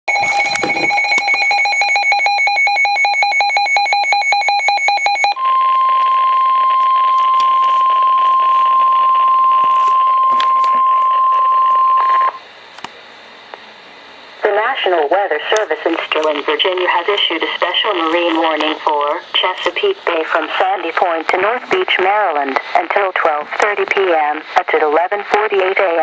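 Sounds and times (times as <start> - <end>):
rapid electronic beeping: 0.1 - 5.6
steady warning alarm tone: 0.1 - 12.5
faint radio hiss: 12.9 - 26.0.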